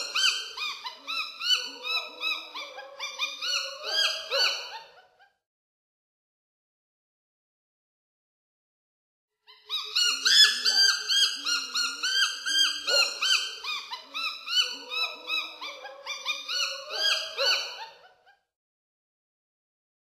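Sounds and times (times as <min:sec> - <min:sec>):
baby chimpanzee squeaking: 0:00.0 - 0:05.0, 0:09.5 - 0:18.1.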